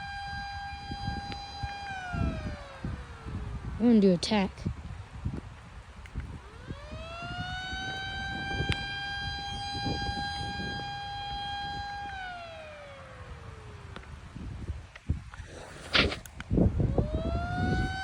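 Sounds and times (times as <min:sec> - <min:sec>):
siren winding up and down: 0:00.0 - 0:18.0.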